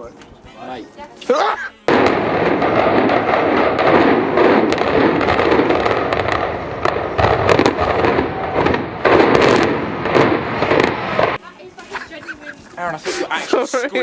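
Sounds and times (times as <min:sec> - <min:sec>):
sharp pops: 0:01.9 - 0:11.4.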